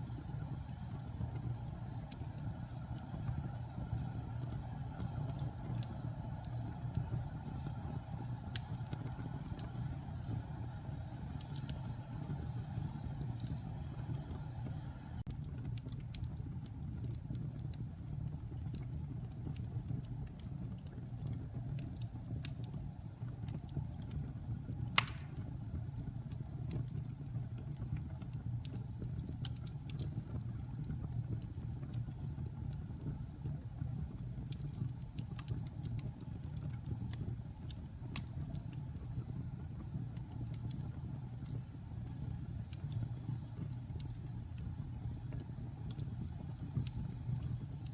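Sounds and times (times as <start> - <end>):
fire crackling in a fireplace: 0.0 - 47.9
loud pop from fire: 24.9 - 25.5.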